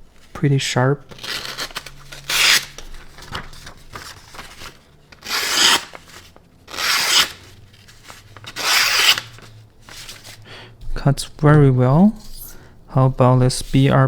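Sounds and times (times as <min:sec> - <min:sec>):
knife slicing paper: 0:01.1 - 0:10.4.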